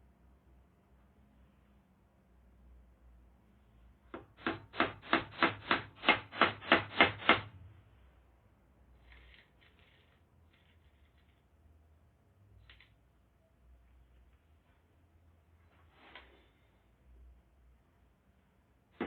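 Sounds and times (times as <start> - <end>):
hammer driving nail into wood: 4.1 - 7.5
faint short scrapes: 15.6 - 16.9.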